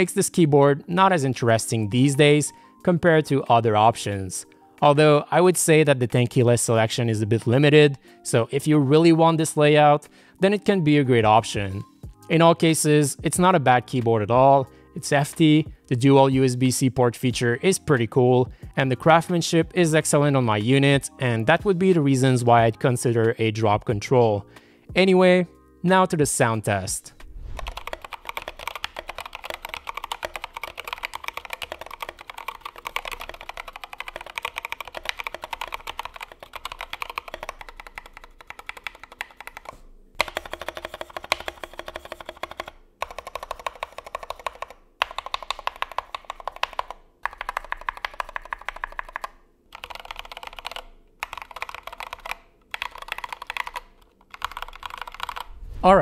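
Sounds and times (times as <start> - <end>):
mechanical keyboard typing: 27.5 - 55.6.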